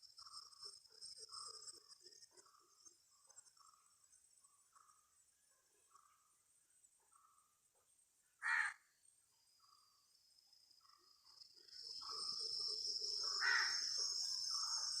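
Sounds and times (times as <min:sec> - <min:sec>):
faint scattered bird calls: 0:00.0 - 0:15.0
crow-like caw: 0:08.4 - 0:08.8, 0:13.4 - 0:13.8
high insect drone: 0:09.4 - 0:15.0.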